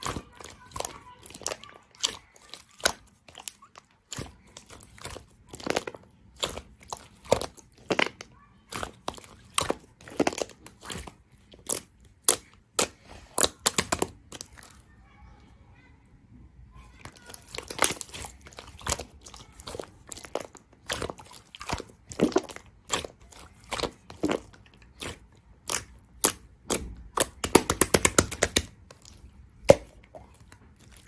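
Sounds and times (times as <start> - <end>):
soft slime crackling: 0.0 - 16.0, 16.6 - 31.0
slime popping and clicking: 25.6 - 28.7.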